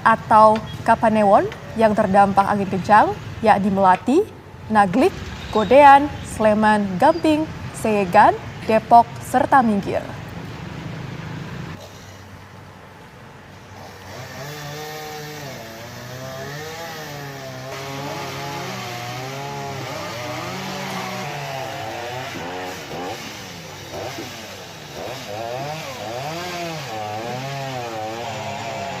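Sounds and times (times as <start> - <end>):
chainsaw revving: 13.7 - 29.0.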